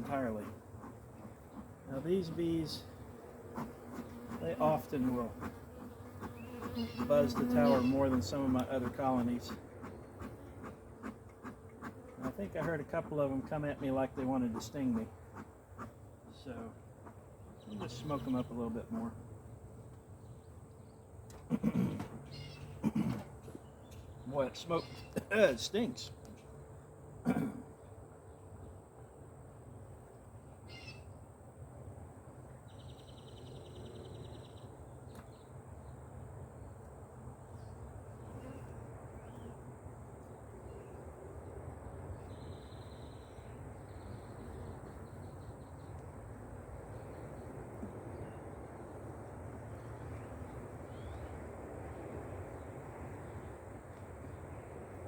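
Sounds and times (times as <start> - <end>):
honeybees buzzing: 0.0 - 19.6.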